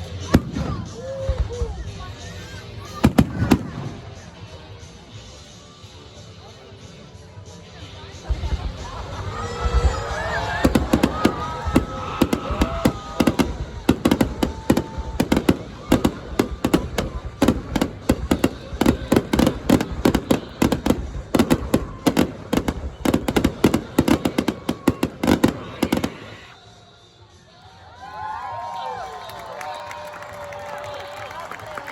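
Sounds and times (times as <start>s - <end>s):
faint voices: 0.0s - 31.9s
fireworks bangs and cracks: 0.2s - 2.0s, 2.9s - 4.3s, 8.3s - 26.6s.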